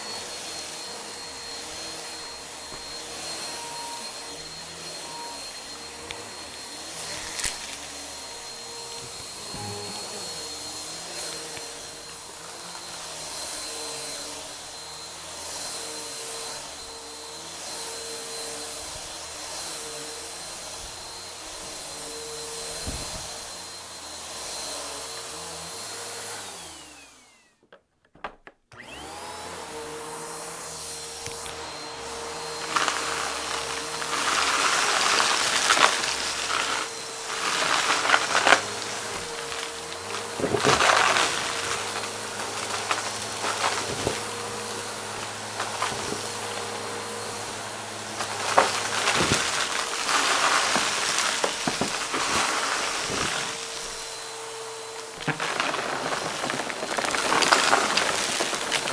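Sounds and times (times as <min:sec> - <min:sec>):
vacuum cleaner running: 0:00.0 - 0:27.6, 0:28.7 - 0:58.9
crackling and crunching debris: 0:07.0 - 0:07.9, 0:32.4 - 0:46.9, 0:48.0 - 0:58.9.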